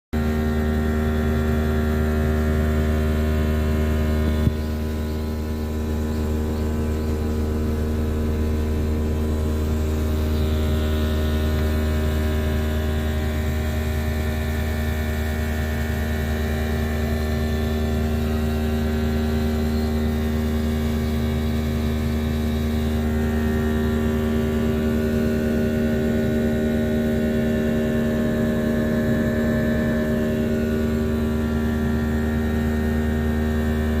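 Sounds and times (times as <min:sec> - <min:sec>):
air conditioner unit humming: 0:00.2 - 0:34.0.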